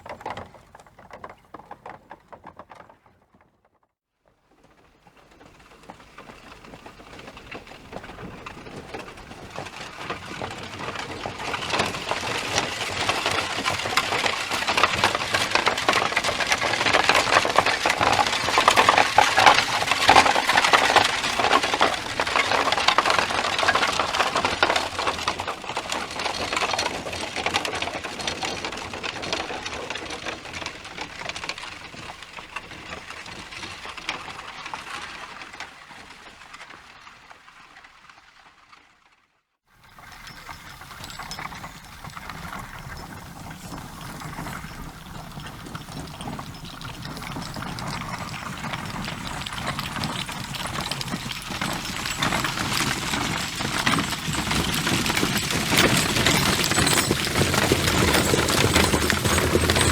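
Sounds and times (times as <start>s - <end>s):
horse hooves clattering: 0.0s - 3.6s, 4.6s - 38.2s, 39.8s - 59.9s.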